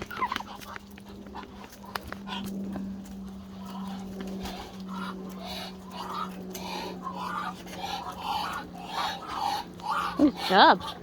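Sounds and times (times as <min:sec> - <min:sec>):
steady low hum: 0:00.0 - 0:11.0
poultry calling softly: 0:03.5 - 0:11.0.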